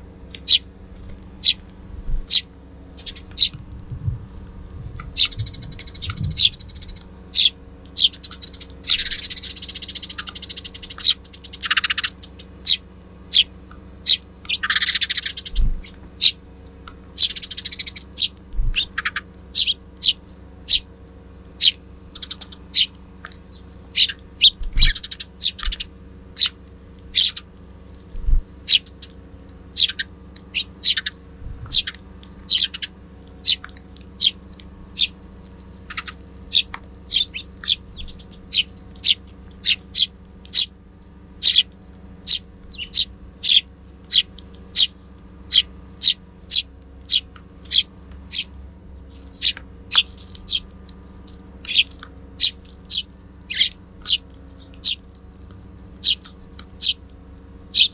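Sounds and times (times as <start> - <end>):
sparrows chirping: 0.0 - 57.9
soft low thumps: 3.2 - 7.0, 31.4 - 31.9.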